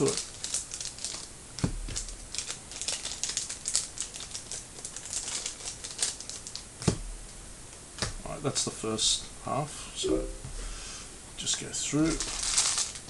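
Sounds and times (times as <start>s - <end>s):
wrappers crinkling: 0.0s - 1.3s, 1.9s - 6.7s, 11.9s - 13.0s.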